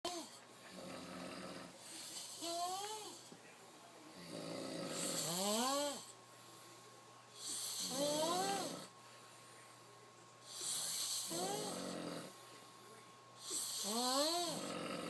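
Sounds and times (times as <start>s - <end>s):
man snoring: 0.1s - 3.0s, 4.2s - 6.1s, 10.5s - 12.3s, 13.4s - 15.0s.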